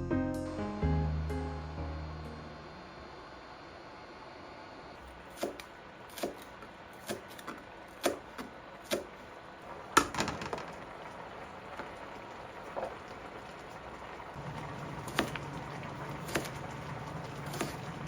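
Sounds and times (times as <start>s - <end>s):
knife chopping on cutting board: 5.3s - 8.3s, 8.9s - 9.1s, 16.3s - 16.6s.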